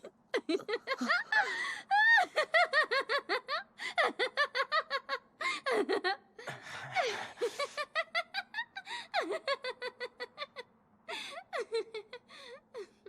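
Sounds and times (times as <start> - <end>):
woman laughing manically: 0.3 - 6.2, 6.9 - 12.9.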